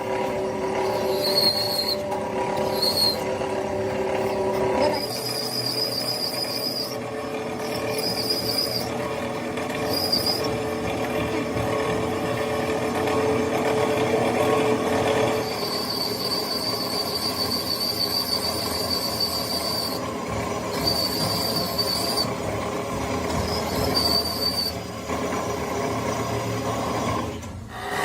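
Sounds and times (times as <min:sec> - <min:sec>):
mechanical rumble: 0:00.0 - 0:28.0
metalworking tool squealing: 0:00.6 - 0:10.8, 0:15.3 - 0:22.4, 0:23.2 - 0:24.9.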